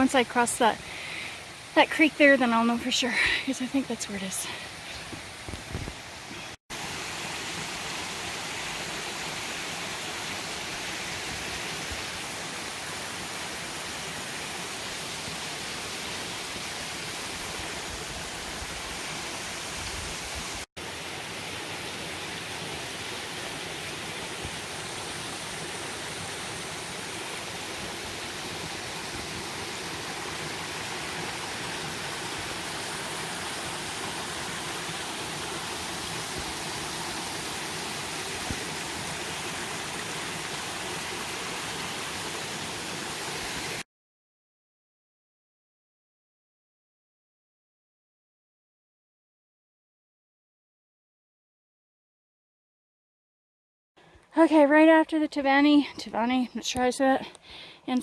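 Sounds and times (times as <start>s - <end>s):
creek water rushing: 0.0s - 43.8s.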